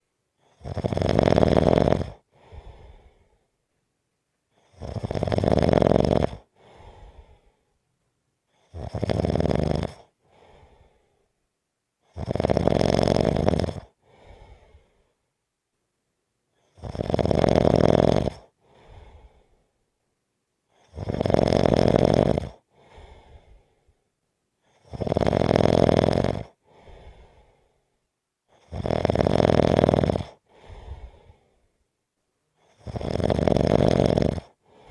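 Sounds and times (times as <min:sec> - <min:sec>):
person snoring: 0:00.6 - 0:02.2, 0:04.7 - 0:06.5, 0:08.7 - 0:10.1, 0:12.1 - 0:13.9, 0:16.8 - 0:18.5, 0:20.8 - 0:22.6, 0:24.8 - 0:26.6, 0:28.6 - 0:31.3, 0:32.7 - 0:34.9.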